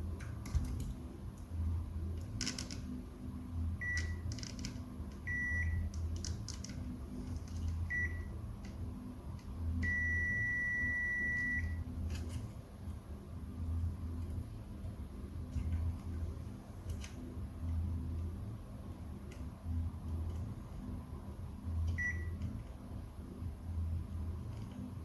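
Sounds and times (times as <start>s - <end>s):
multimeter buzzer beeping: 9.8s - 11.8s.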